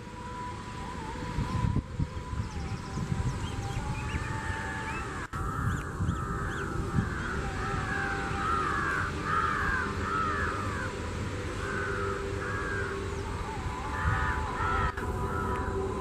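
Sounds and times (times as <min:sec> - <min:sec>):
low train rumble: 0:00.0 - 0:16.0
bird calling harshly: 0:03.4 - 0:16.0.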